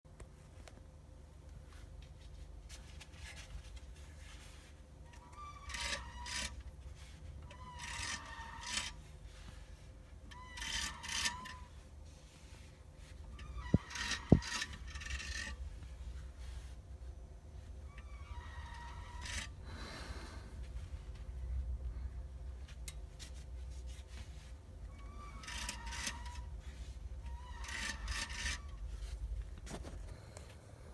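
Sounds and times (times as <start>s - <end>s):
low steady rumble: 0.1s - 30.9s
steady low hum: 0.1s - 30.9s
rubbing rasping noise: 12.4s - 15.6s.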